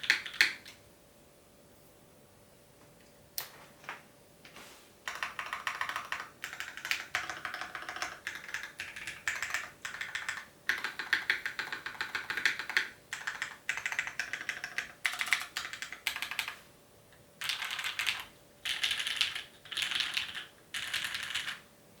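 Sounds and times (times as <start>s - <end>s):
typing on mechanical keyboard: 0.0s - 0.8s, 5.1s - 16.6s, 17.4s - 21.6s.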